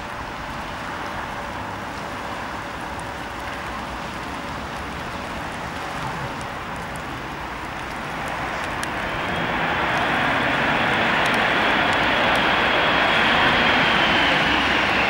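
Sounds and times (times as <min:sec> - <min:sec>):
jet engines rushing: 0:06.5 - 0:15.0
high steady whine: 0:07.6 - 0:15.0.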